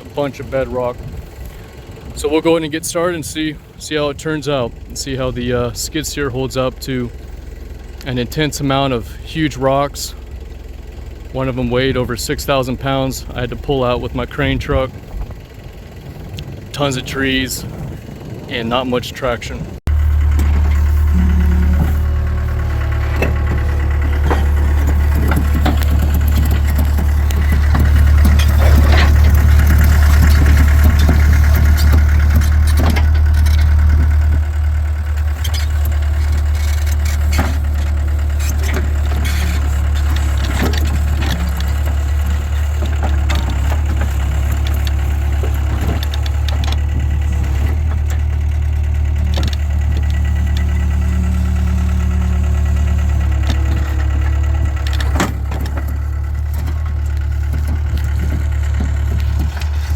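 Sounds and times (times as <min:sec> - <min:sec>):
diesel engine droning: 0:00.0 - 0:59.9
clanks and knocks: 0:20.0 - 0:34.4, 0:49.2 - 0:59.9.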